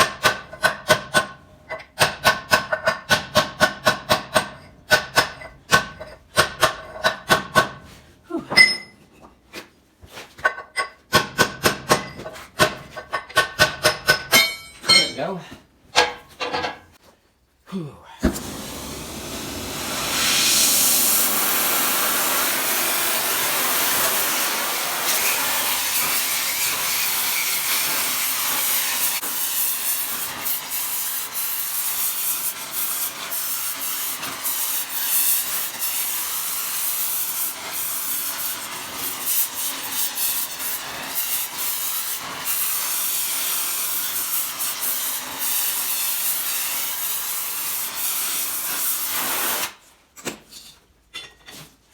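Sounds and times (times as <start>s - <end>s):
gas torch flame hissing: 18.2s - 49.8s.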